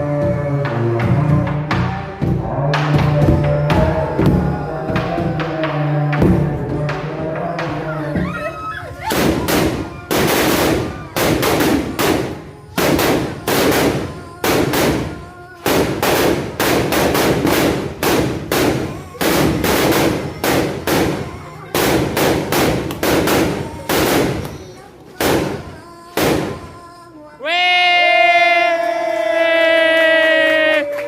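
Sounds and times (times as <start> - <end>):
loud sharp ringing bangs: 9.0 - 24.5, 25.2 - 26.8.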